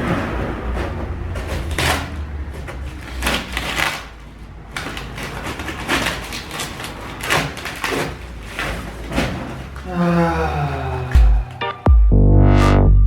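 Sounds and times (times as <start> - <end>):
cardboard packaging rustling and scraping: 0.0 - 9.8.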